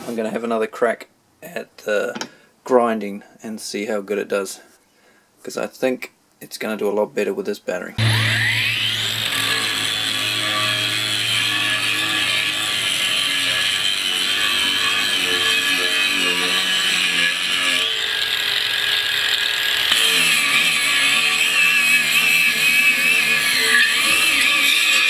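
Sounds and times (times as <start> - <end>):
angle grinder grinding concrete: 8.0 - 25.0.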